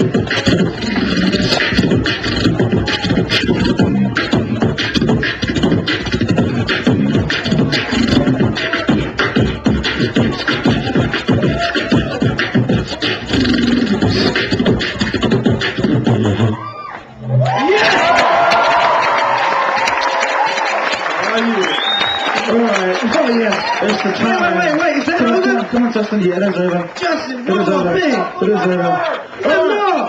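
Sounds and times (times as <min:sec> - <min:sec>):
person beatboxing: 0:00.0 - 0:16.6.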